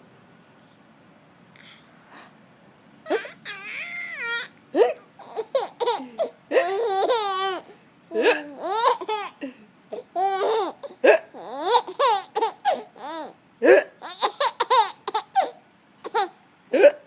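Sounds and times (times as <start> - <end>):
baby babbling: 3.1 - 13.4, 14.0 - 16.4
hiccups: 11.0 - 11.4, 13.6 - 14.0, 16.7 - 17.0.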